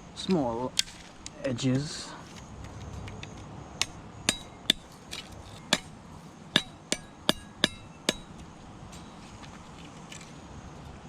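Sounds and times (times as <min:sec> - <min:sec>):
blade striking bamboo: 0:03.8 - 0:09.5.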